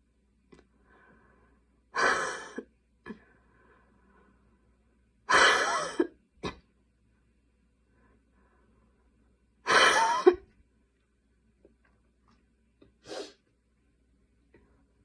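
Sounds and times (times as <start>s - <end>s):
person coughing harshly: 5.3s - 6.6s, 9.7s - 10.4s.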